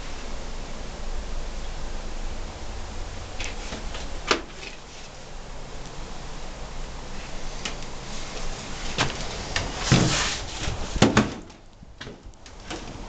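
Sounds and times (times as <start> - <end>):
scraping rustle: 3.4 - 5.4, 7.1 - 13.0.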